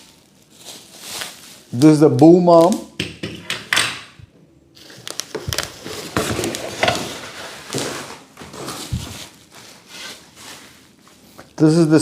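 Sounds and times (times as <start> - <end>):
packaging rustling and crackling: 0.0 - 2.7, 4.8 - 11.4.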